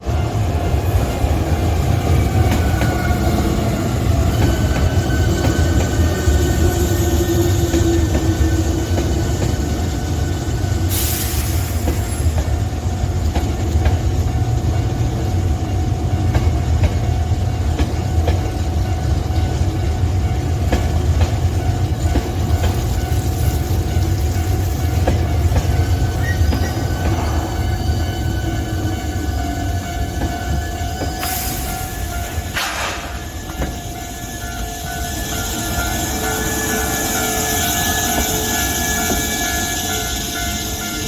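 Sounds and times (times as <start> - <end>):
electric train rumbling on rails: 0.0 - 41.0
wheel squeal: 25.7 - 28.6.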